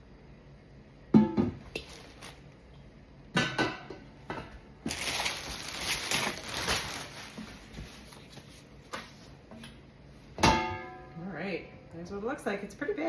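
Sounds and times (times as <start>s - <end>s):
packaging crinkling and rustling: 1.8s - 2.4s, 4.8s - 9.2s.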